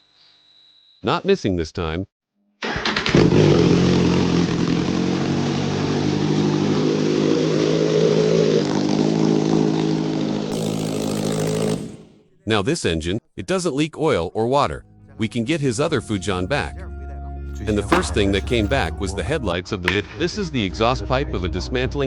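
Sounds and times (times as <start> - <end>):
motorcycle engine starting and idling: 2.6 - 12.3, 17.6 - 19.6.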